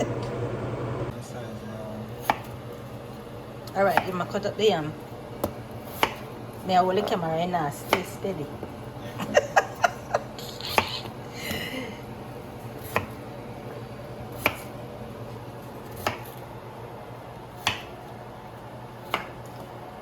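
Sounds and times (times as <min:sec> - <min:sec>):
knife chopping on cutting board: 0:02.2 - 0:02.6, 0:05.4 - 0:06.3, 0:07.8 - 0:08.8, 0:12.8 - 0:13.2, 0:14.3 - 0:14.8, 0:15.8 - 0:16.4, 0:17.5 - 0:18.0, 0:19.0 - 0:19.7.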